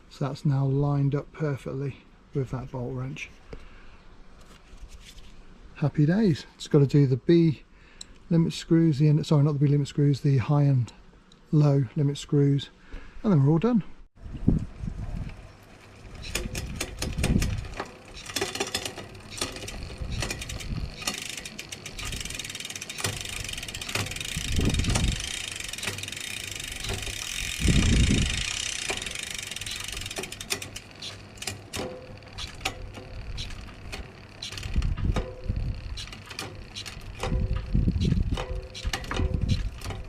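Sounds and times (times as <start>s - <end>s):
bicycle chain running over cassette: 15.3s - 40.0s
freehub pawls ticking: 15.6s - 40.0s.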